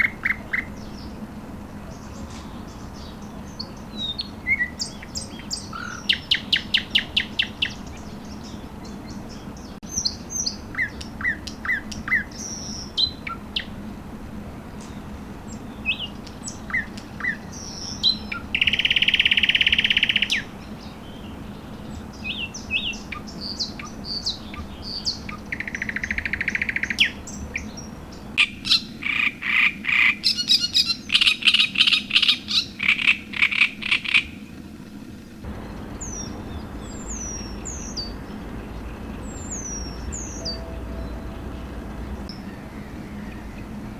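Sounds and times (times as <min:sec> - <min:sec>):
loud repeated bird notes: 0:00.0 - 0:34.4, 0:35.5 - 0:43.9
songbirds chirping and whistling: 0:00.0 - 0:43.9
buzzy bird trill: 0:35.5 - 0:43.9.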